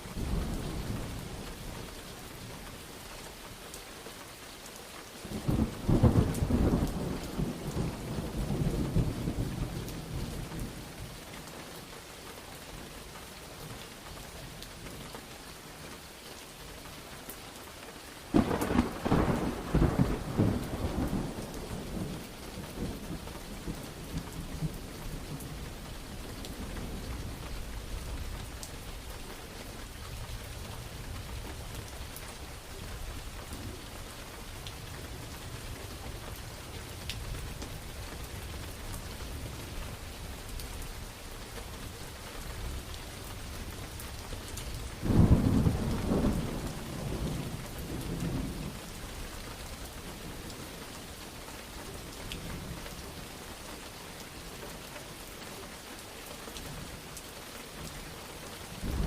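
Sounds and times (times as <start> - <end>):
steady rain falling: 0.0 - 59.0
thunderclap rolling: 18.3 - 22.2.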